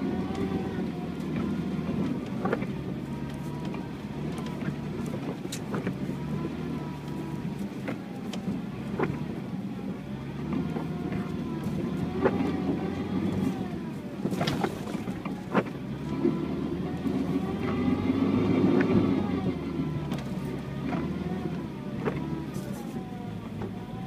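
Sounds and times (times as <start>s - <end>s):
vehicle engine droning with whine: 0.0s - 24.0s
suspension knocks and clunks: 10.3s - 24.0s.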